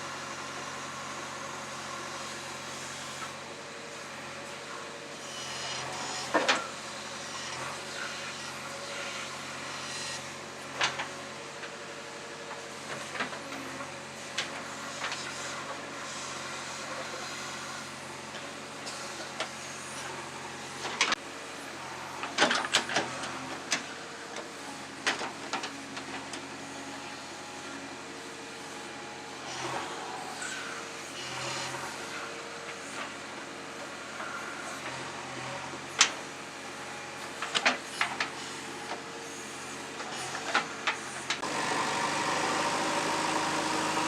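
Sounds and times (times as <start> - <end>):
diesel engine running: 40.2 - 44.0.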